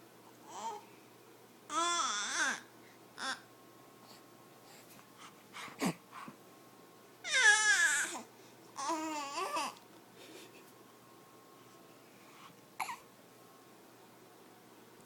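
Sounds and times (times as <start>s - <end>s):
baby babbling and cooing: 0.5s - 0.9s, 1.7s - 3.5s, 7.2s - 9.8s, 12.8s - 13.0s.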